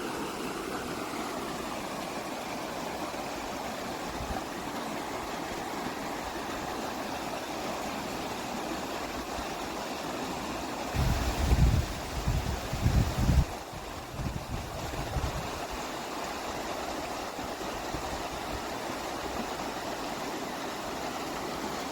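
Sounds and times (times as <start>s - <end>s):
flowing water: 0.0s - 21.9s
wind buffeting microphone: 11.0s - 15.8s.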